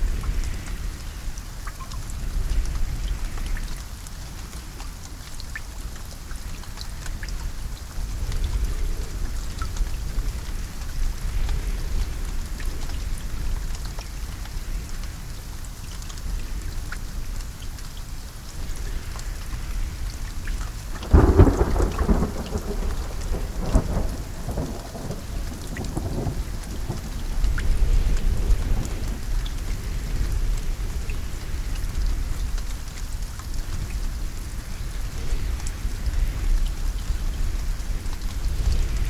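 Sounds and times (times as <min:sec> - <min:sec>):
steady rain falling: 0:00.0 - 0:39.0
loud thunderclap: 0:20.9 - 0:29.3.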